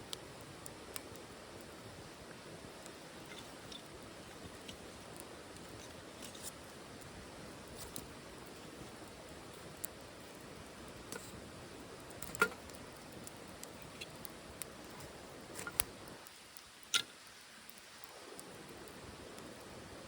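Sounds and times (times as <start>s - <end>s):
wood fire crackling in stove: 0.0s - 20.0s.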